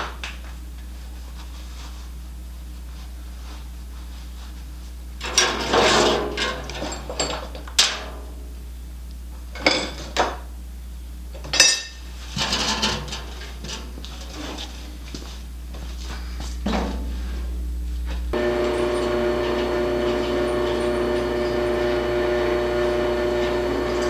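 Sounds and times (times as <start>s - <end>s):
steady low hum: 10.4s - 24.0s.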